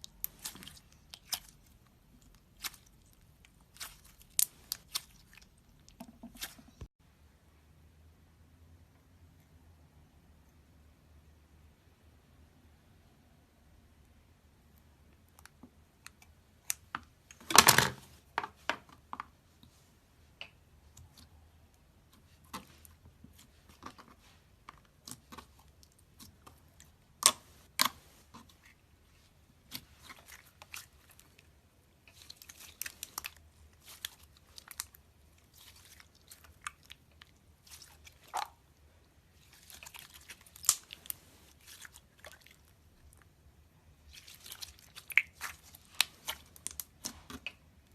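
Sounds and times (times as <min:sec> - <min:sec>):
slime popping and crackling: 0:39.4 - 0:42.7, 0:44.0 - 0:47.6.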